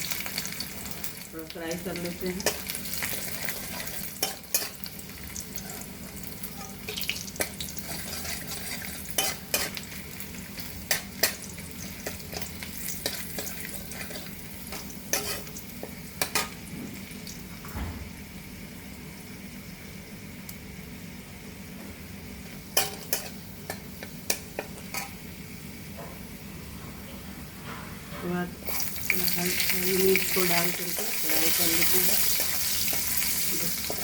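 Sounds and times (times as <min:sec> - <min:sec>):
garlic sizzling in hot oil: 0:00.0 - 0:17.5, 0:28.6 - 0:34.0.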